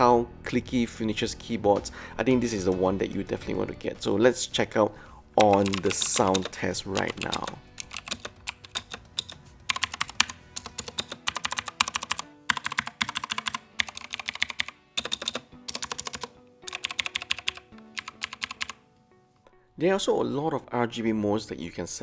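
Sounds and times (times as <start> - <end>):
fast typing on mechanical keyboard: 5.4 - 18.8.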